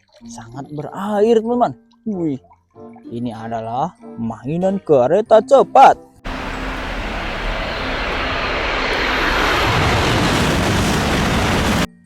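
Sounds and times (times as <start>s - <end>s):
running water rushing: 6.3s - 11.2s.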